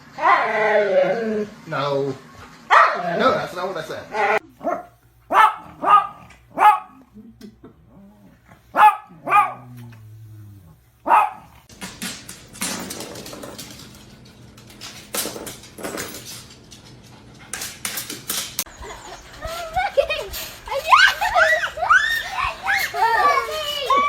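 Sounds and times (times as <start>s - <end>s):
dog barking: 2.7s - 3.2s, 4.2s - 7.1s, 8.7s - 9.7s, 11.0s - 11.6s
dog growling: 5.6s - 11.6s.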